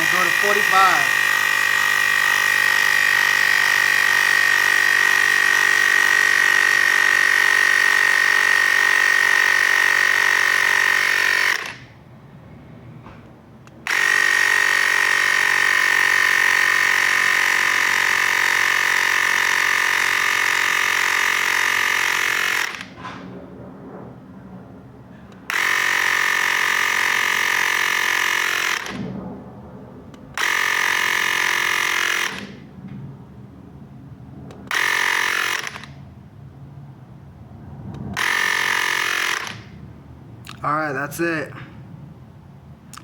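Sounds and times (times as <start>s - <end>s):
tire inflator motor whine: 0.0s - 12.0s, 13.6s - 23.2s, 25.4s - 29.1s, 30.3s - 32.6s, 34.6s - 36.0s, 38.2s - 39.8s.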